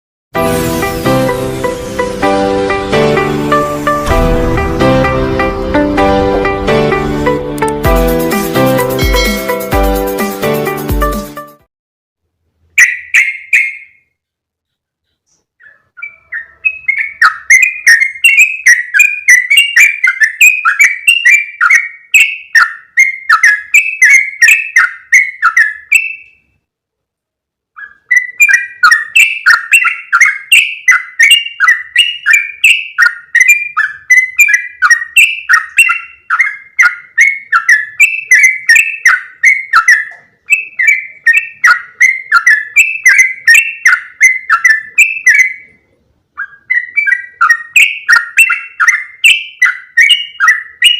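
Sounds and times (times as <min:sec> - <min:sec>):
bird chattering call: 0:27.8 - 0:45.7.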